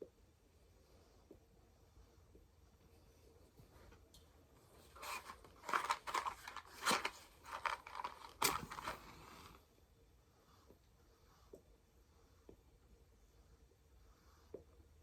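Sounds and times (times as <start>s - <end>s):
scratchy crackling of pipe lighting: 3.7s - 9.6s.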